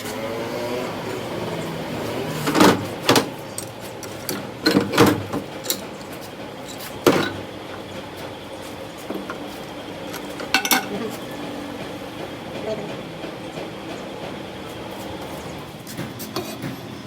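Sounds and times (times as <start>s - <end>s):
metal clanks and knocks: 2.4s - 8.0s, 9.0s - 9.5s, 10.1s - 14.4s.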